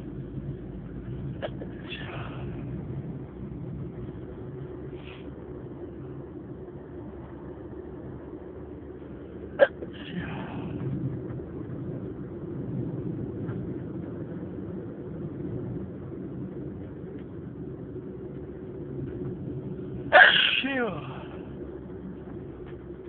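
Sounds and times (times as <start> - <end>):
breathy rush of air: 1.3 - 3.2, 4.8 - 5.6, 9.2 - 11.1, 20.0 - 21.7
person's stifled sneeze: 9.6 - 10.3, 20.1 - 20.8.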